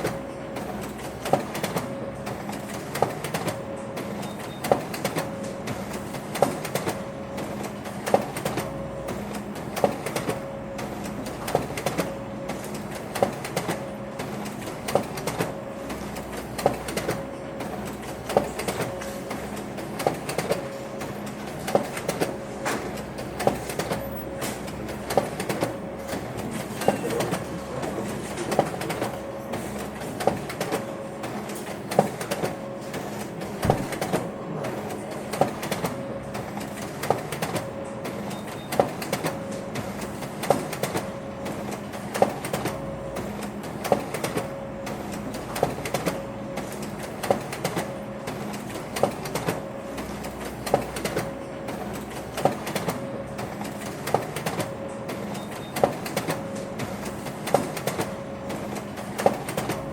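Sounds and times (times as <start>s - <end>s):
printer clacking: 0.0s - 59.9s
printer mechanical hum: 0.0s - 59.9s.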